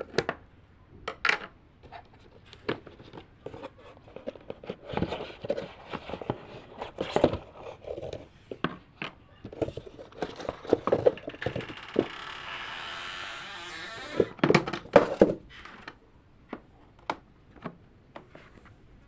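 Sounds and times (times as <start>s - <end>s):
packaging rustling and scraping: 2.0s - 8.6s, 9.4s - 16.0s.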